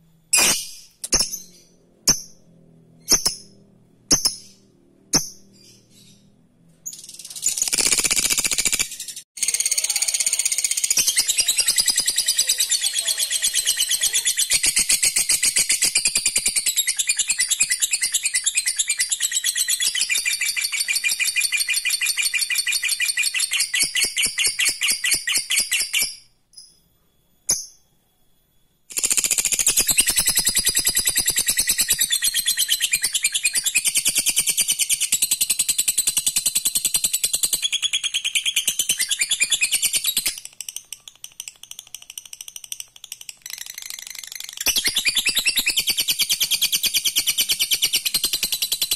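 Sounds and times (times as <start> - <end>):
lovebird chattering trill: 9.5 - 15.9.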